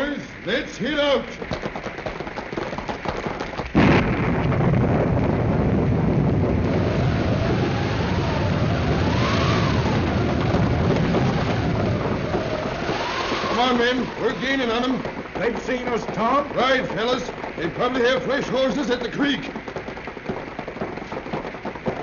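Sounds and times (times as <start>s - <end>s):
rapid clatter: 0.0s - 22.0s
heavy rain: 1.4s - 22.0s
thunder crash: 3.7s - 15.5s
whistling wind: 3.8s - 18.4s.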